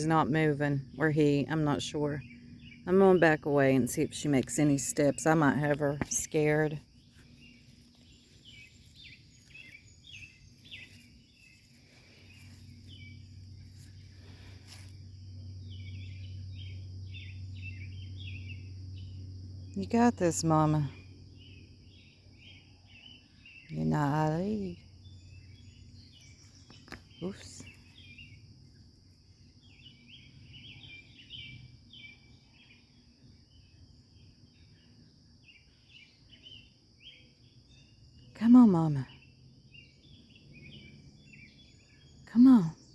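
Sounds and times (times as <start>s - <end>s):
birds chirping: 0.0s - 42.9s
low steady hum: 0.0s - 42.9s.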